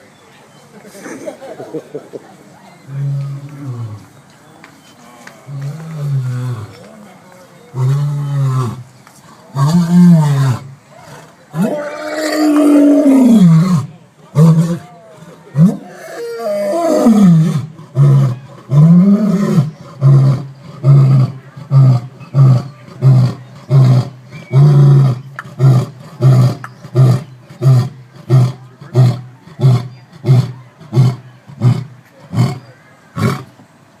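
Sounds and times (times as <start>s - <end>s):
lion roaring: 9.5s - 32.6s.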